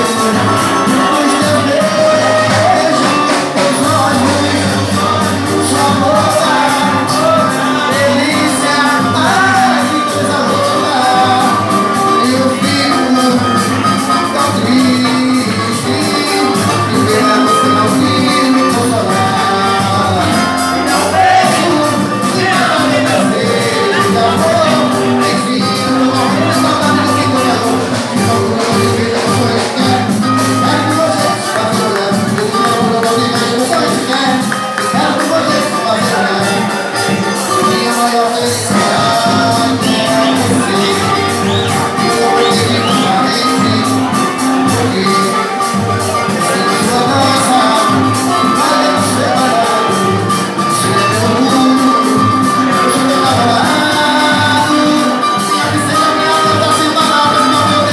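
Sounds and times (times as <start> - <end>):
live latin band music: 0.0 - 57.9.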